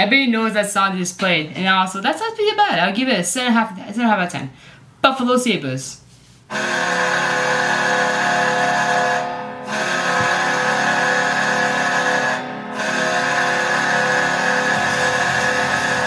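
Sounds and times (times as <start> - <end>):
goal horn blasting: 6.5 - 16.0.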